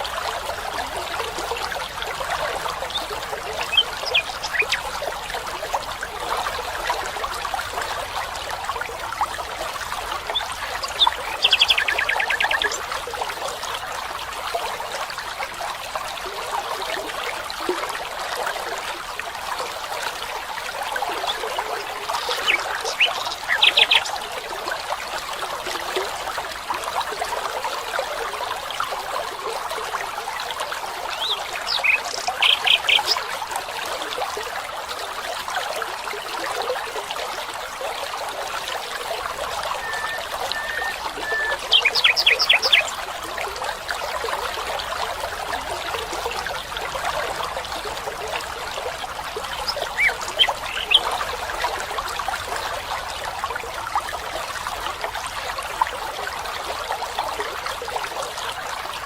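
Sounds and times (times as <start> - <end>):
stream trickling: 0.0 - 59.0
bird calling: 2.9 - 4.8, 10.4 - 12.8, 31.2 - 33.2, 39.5 - 42.9.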